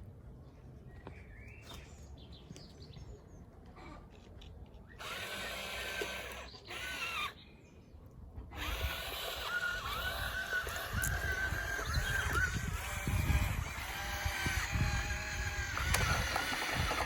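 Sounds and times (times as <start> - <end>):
small electric motor whirring: 5.0 - 7.4, 8.5 - 17.0.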